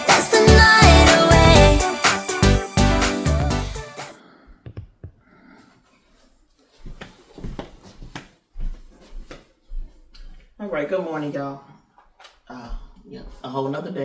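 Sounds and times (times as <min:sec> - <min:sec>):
background pop music: 0:00.0 - 0:04.2
faint knocks: 0:04.6 - 0:05.2.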